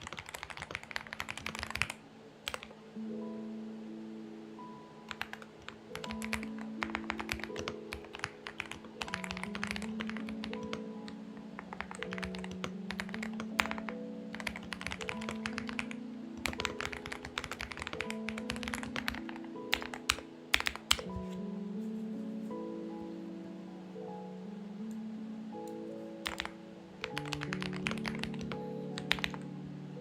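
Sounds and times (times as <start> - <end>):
mechanical keyboard typing: 0.0 - 2.7, 5.1 - 21.3, 26.2 - 29.4
soft background music: 0.0 - 30.0.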